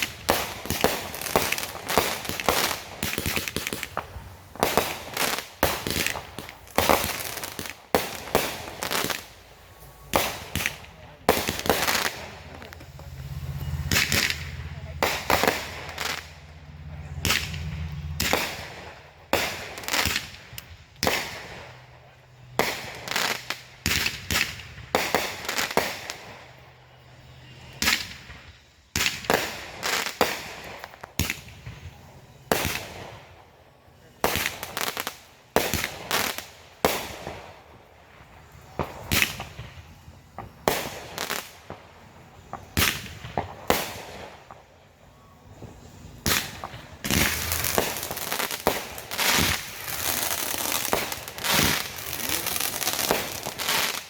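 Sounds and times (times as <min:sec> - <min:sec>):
fireworks bangs and crackling: 0:00.0 - 0:54.0.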